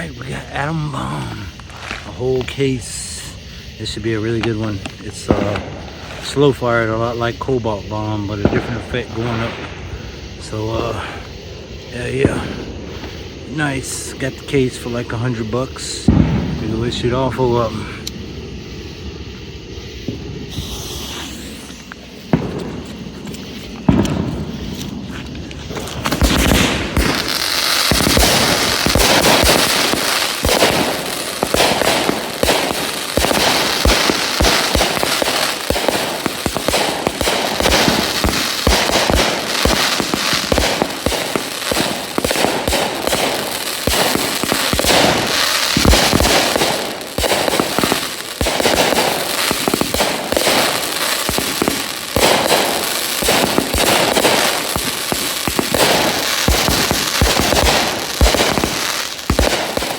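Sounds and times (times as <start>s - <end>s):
aerial firework bursts: 0.0s - 59.9s
crackling firework tails: 0.0s - 59.9s
firework mortar launches: 0.0s - 59.9s.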